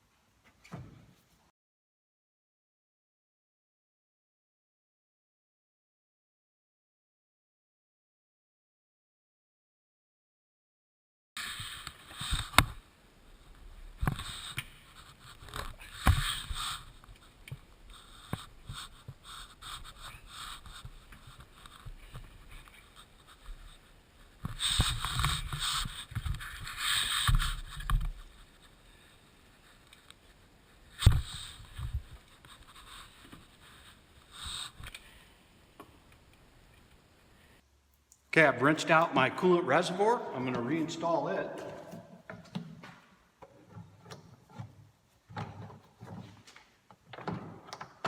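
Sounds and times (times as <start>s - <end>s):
knocks clicks and scraping: 41.6s - 48.0s.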